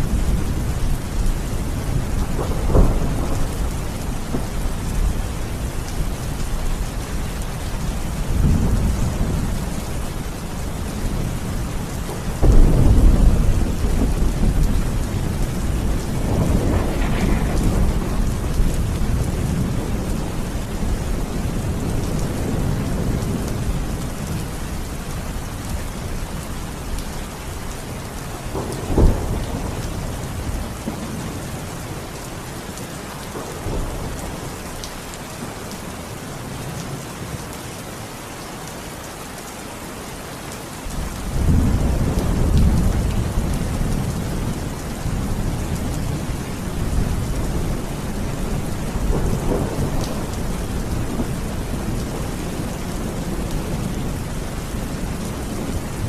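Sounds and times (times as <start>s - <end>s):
low rumble of thunder: 0.0s - 31.8s, 40.9s - 56.0s
steady rain: 0.0s - 56.0s
sharp thunderclap: 1.9s - 5.1s, 12.4s - 20.4s.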